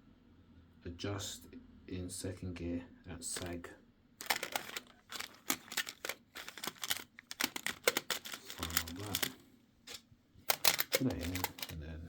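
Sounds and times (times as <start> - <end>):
plastic bags crinkling: 4.2 - 11.8
small parts rattling in a tin: 4.2 - 11.8.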